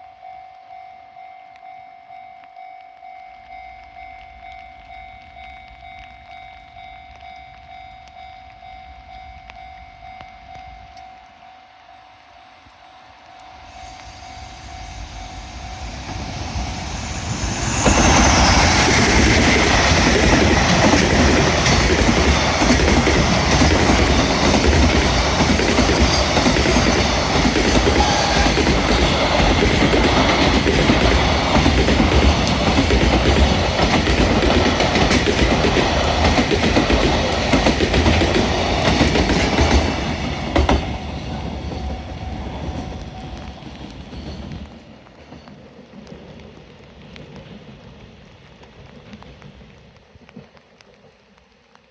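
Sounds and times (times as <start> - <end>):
electric freight train passing: 0.0 - 50.2
wagon wheels clattering over rail joints: 17.7 - 46.3.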